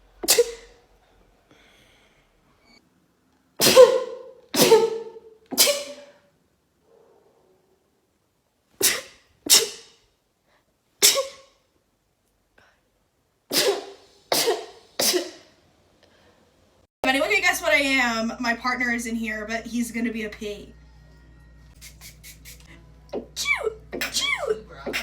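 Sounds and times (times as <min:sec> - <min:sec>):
person sneezing: 0:00.2 - 0:00.8, 0:03.6 - 0:06.2, 0:08.8 - 0:10.0, 0:11.0 - 0:11.6, 0:13.5 - 0:15.5, 0:23.4 - 0:25.0.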